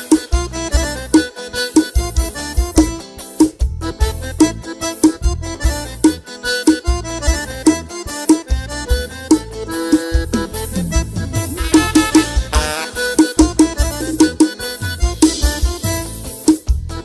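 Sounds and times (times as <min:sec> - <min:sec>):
accordion playing a lively tune: 0:00.0 - 0:17.0
bass and percussion beat: 0:00.0 - 0:17.0.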